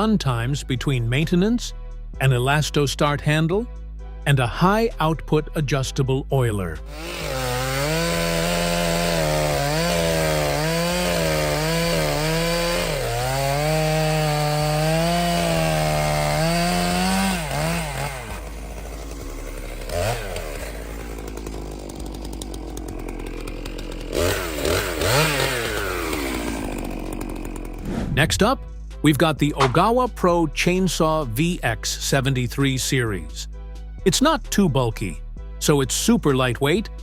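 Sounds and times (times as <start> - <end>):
chainsaw revving: 6.8 - 28.4
chainsaw cutting: 6.8 - 29.9.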